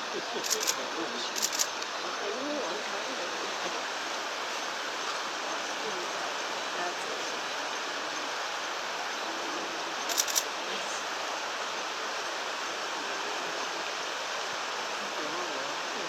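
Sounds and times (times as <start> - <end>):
rushing background noise: 0.0 - 16.0
quick sharp clicks: 1.4 - 1.9, 10.1 - 10.4.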